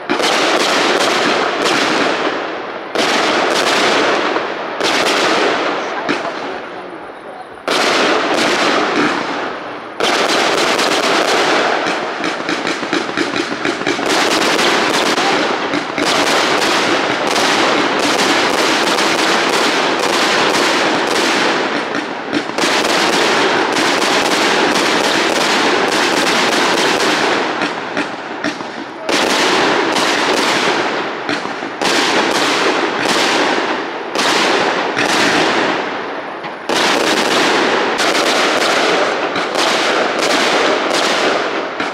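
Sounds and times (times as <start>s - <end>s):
fireworks bursting: 0.0s - 41.9s.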